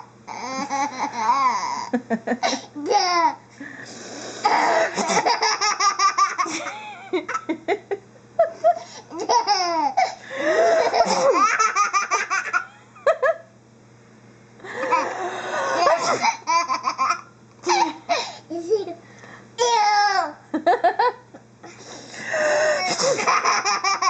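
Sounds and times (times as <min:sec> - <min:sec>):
toddler giggling: 0:00.3 - 0:03.4, 0:09.1 - 0:13.4, 0:14.8 - 0:18.9.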